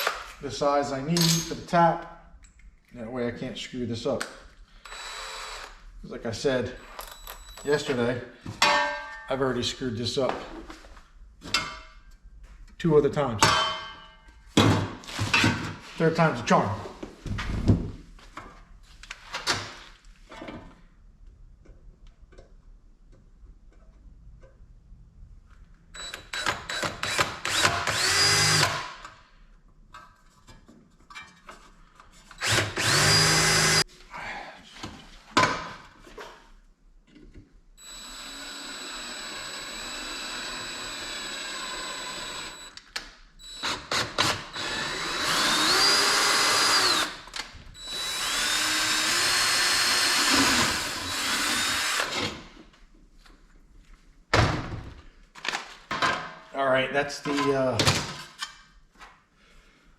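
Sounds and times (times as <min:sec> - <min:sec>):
power drill boring into metal: 0:04.8 - 0:05.8, 0:26.0 - 0:29.0, 0:32.4 - 0:33.8, 0:37.8 - 0:42.8, 0:43.4 - 0:47.2, 0:47.8 - 0:52.3.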